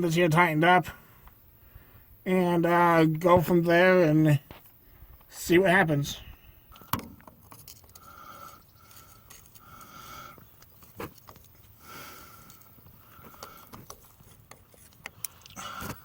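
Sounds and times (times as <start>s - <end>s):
screwdriver scraping with squeak: 13.4s - 16.0s.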